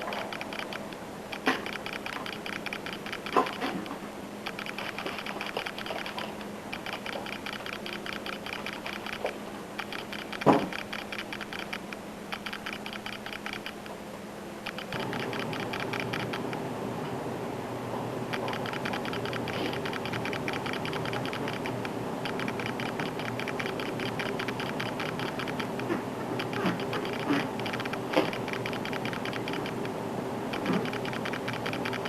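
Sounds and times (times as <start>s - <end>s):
light irregular clicking: 0.0s - 14.0s, 14.6s - 16.6s, 18.3s - 29.9s
steady noise: 0.0s - 32.0s.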